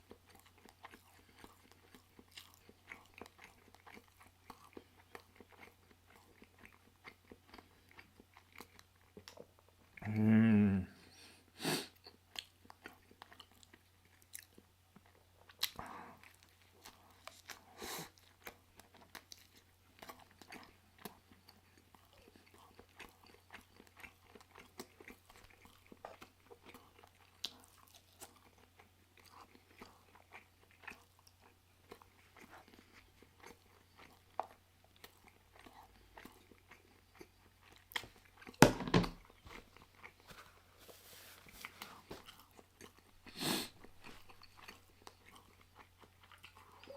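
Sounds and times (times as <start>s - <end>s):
person chewing: 0.0s - 10.5s, 11.8s - 46.9s
thump: 38.6s - 39.2s.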